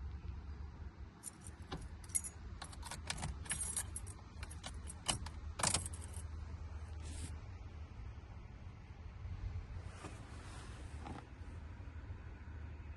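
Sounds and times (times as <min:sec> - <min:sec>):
keys jingling: 0:01.2 - 0:06.2.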